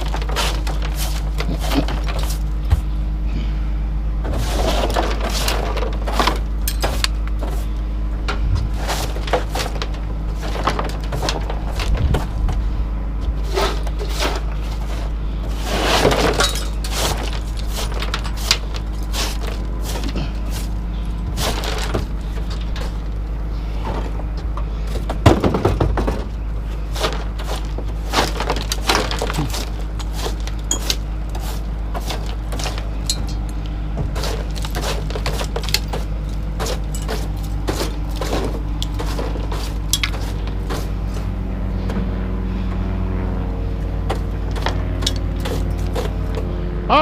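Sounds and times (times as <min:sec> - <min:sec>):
scrap metal clattering: 0:00.0 - 0:03.0, 0:04.2 - 0:41.4
low hum: 0:00.0 - 0:47.0.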